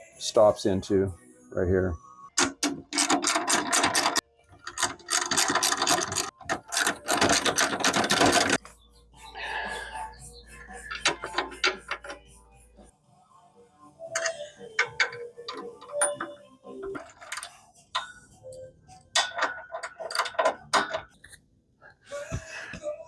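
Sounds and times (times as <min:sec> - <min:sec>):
metal clicks of hand tools: 0:14.1 - 0:18.2, 0:19.1 - 0:21.4.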